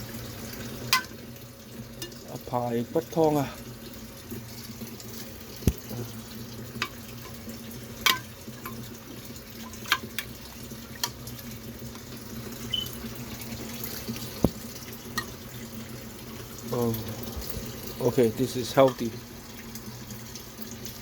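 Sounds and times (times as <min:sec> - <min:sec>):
faucet running into sink: 0:00.0 - 0:21.0.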